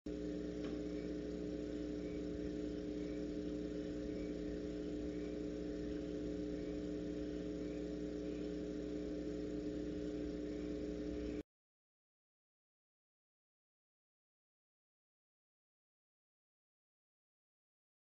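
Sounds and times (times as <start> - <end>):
steady electrical hum: 0.1 - 11.4
faint hiss: 0.3 - 11.4.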